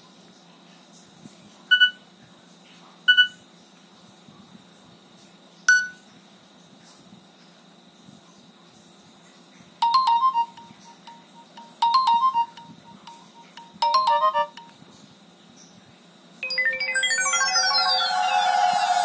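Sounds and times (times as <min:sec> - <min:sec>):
mobile phone ringtone: 0:09.8 - 0:14.8, 0:16.4 - 0:19.0.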